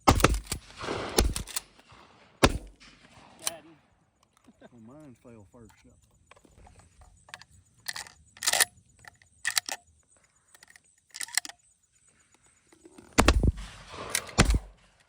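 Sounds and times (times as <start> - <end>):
shotgun shots: 0.0 - 4.0, 13.2 - 15.0
short clicks and rattles: 5.6 - 15.0.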